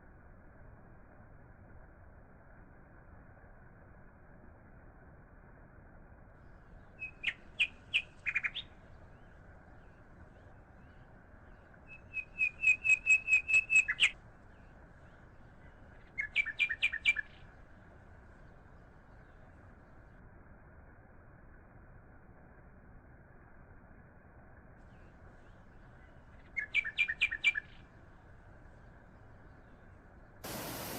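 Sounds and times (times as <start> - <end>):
faint steady hiss: 0.0 - 30.9
songbird chirping: 6.7 - 17.6, 24.8 - 28.3.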